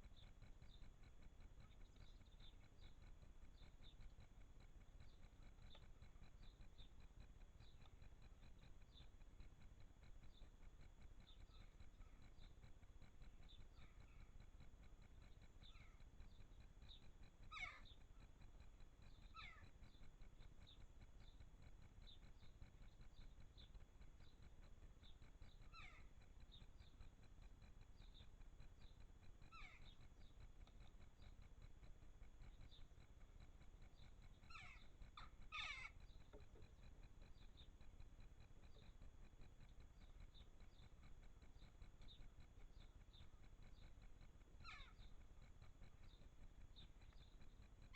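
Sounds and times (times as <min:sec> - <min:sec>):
faint high whine: 0:00.0 - 0:47.9
low background rumble: 0:00.0 - 0:47.9
birds calling: 0:15.3 - 0:18.0, 0:19.2 - 0:20.0, 0:22.9 - 0:27.0, 0:28.0 - 0:31.5, 0:32.4 - 0:47.9
high bird chirps: 0:34.5 - 0:36.1.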